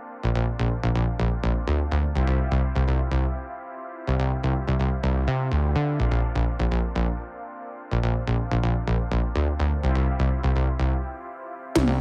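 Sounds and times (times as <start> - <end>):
deep bass line: 0.2 - 3.5, 4.1 - 7.3, 7.9 - 11.2, 11.8 - 12.0
synthesizer notes: 11.8 - 12.0.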